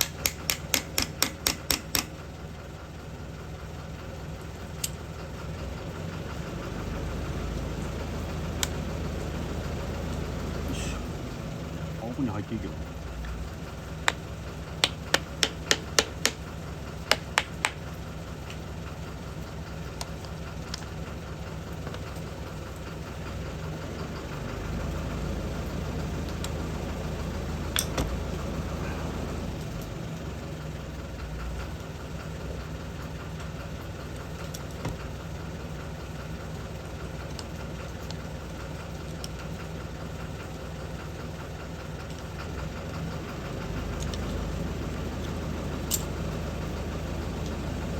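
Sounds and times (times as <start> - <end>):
sharp metallic taps: 0.0 - 2.2, 14.8 - 16.4, 17.1 - 17.8
machine hum: 0.0 - 36.4.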